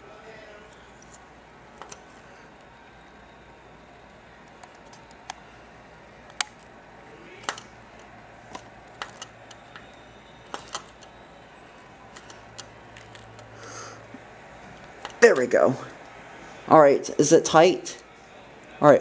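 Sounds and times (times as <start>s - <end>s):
clicks and taps of hard parts: 6.3s - 6.6s, 7.4s - 9.9s, 10.5s - 11.1s, 12.1s - 13.5s, 14.8s - 15.2s.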